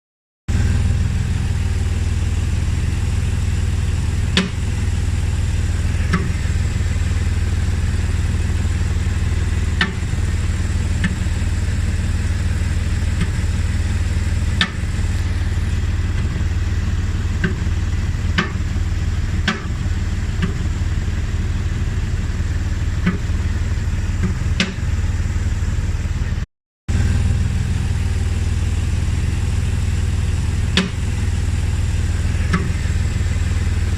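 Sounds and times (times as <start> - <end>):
car engine running: 0.5 - 33.9
sharp engine knock: 4.3 - 4.8, 9.7 - 10.3, 14.6 - 16.5, 17.3 - 20.8, 23.0 - 23.4, 24.2 - 25.0, 30.7 - 31.2.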